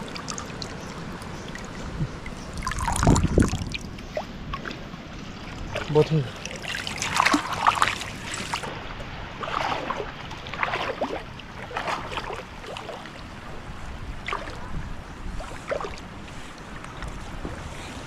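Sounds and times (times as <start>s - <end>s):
wind rumble on microphone: 0.0s - 6.2s, 7.7s - 18.0s
water sloshing and splashing: 0.0s - 18.0s.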